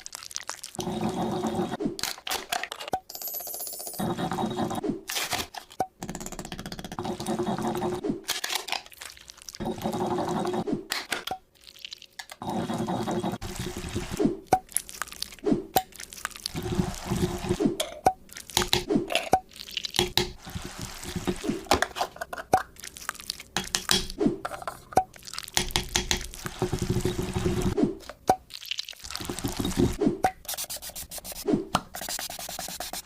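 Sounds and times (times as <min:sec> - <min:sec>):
liquid pouring and dripping: 0:25.0 - 0:30.0.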